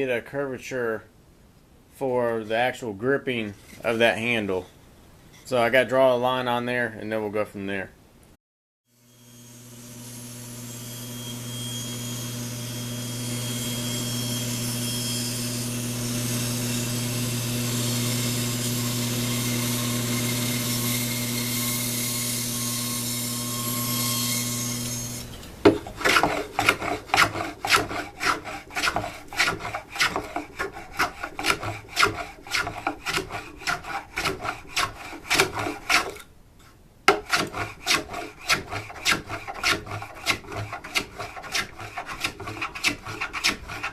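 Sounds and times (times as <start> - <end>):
hand scraping wood: 3.3 - 4.6, 25.0 - 43.9
bandsaw cutting wood: 9.0 - 36.2, 37.1 - 43.9.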